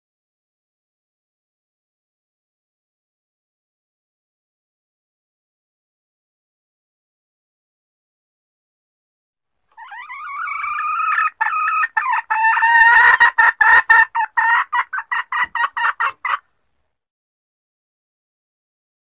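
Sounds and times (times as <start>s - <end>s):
hen calling and clucking: 9.7s - 16.5s.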